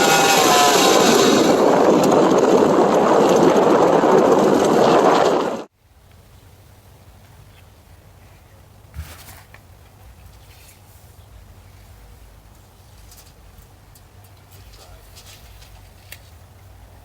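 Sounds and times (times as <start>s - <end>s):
loud motor running: 0.0s - 5.7s.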